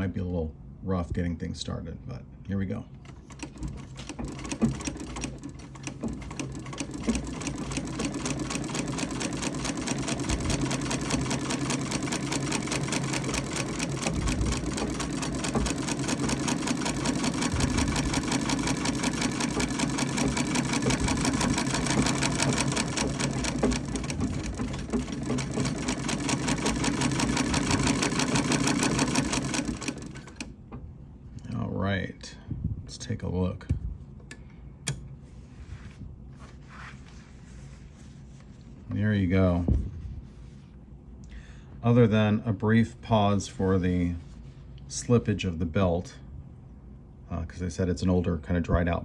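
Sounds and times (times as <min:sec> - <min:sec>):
treadle sewing machine clattering: 0:03.0 - 0:30.5.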